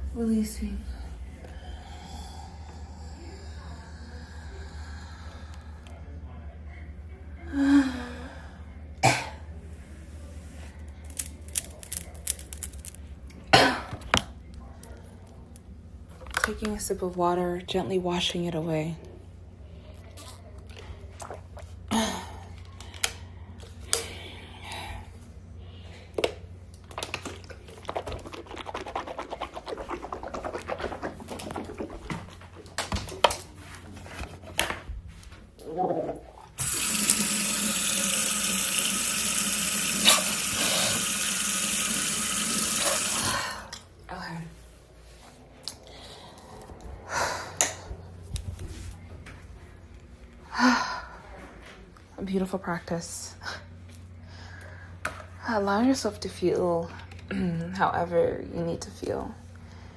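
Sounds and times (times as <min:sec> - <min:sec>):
low steady hum: 0:00.0 - 0:59.9
person breathing out: 0:01.0 - 0:05.7
person sipping water: 0:27.5 - 0:32.6, 0:39.9 - 0:41.5.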